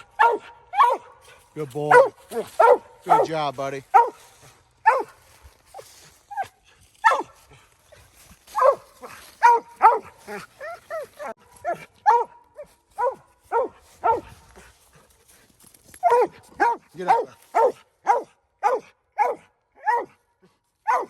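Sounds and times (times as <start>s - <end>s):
dog barking: 0.0s - 5.2s, 6.3s - 7.4s, 8.5s - 14.7s, 16.0s - 20.2s.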